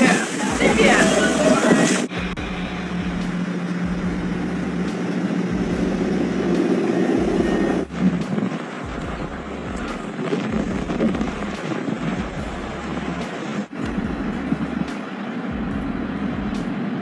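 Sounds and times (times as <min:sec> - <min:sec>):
low rumble: 0:00.0 - 0:14.9, 0:15.5 - 0:17.0
outdoor noise: 0:00.0 - 0:17.0
vehicle engine running: 0:00.0 - 0:17.0.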